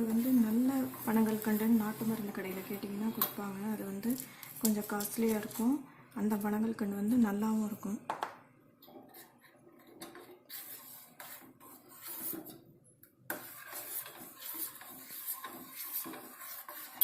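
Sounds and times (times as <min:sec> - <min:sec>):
spoon scraping in a cup: 0:09.0 - 0:12.6, 0:13.3 - 0:17.0.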